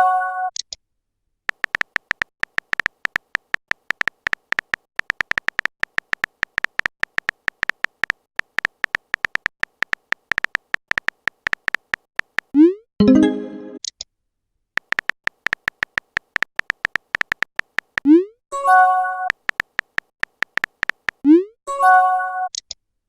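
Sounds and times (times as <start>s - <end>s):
keyboard typing clicks: 1.5s - 14.0s, 14.8s - 18.2s, 19.2s - 21.3s.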